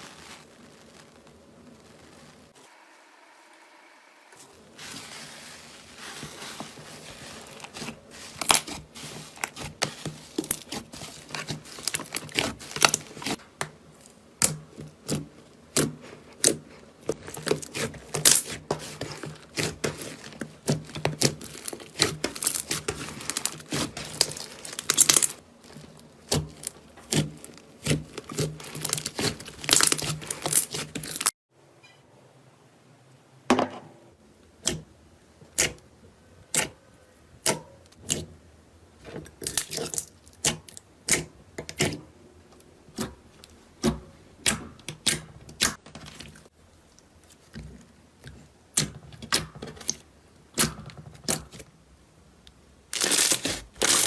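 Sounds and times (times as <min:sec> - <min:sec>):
slime crackling and popping: 0:00.0 - 0:02.6, 0:07.4 - 0:13.4, 0:14.4 - 0:31.3, 0:52.9 - 0:54.0.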